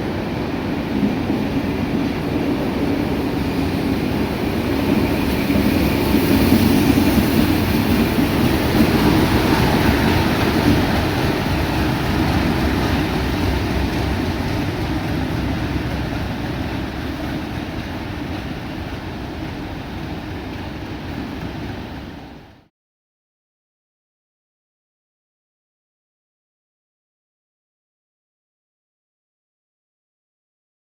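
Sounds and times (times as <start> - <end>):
train running past: 0.0 - 22.7.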